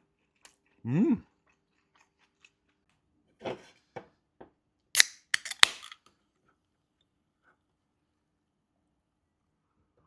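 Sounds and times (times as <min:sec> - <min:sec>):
hard plastic clicks and snaps: 0:05.0 - 0:06.0.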